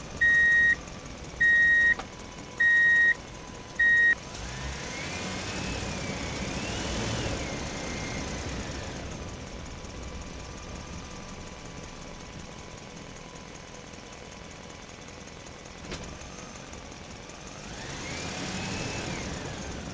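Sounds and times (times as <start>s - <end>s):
truck engine idling: 0.0s - 4.4s, 7.6s - 17.4s.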